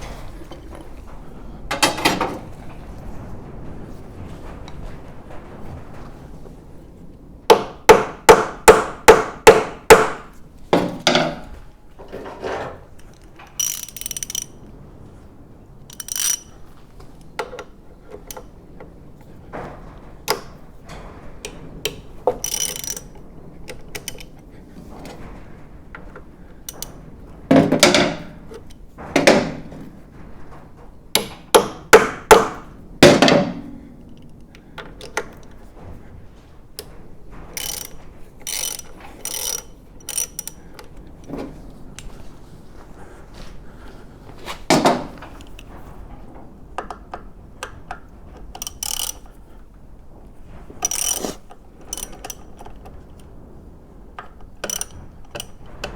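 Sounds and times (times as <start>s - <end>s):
metallic clinks and knocks: 0.0s - 3.7s, 10.1s - 14.8s, 21.6s - 24.4s
ratchet clicking: 13.4s - 14.6s, 15.9s - 16.6s, 22.4s - 24.3s, 37.6s - 40.6s, 48.6s - 49.3s, 50.8s - 52.8s, 54.6s - 55.6s.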